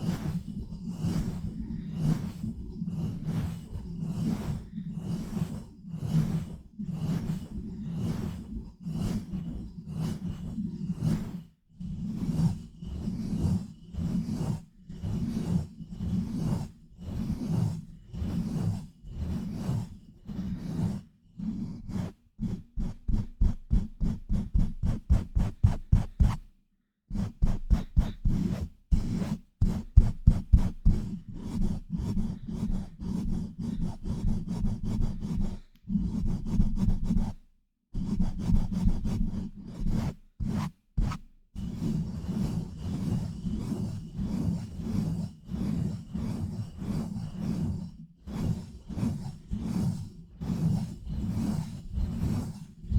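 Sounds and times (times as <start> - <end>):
hands rubbing on a microphone: 19.2 - 26.5, 27.1 - 37.4, 38.0 - 41.3.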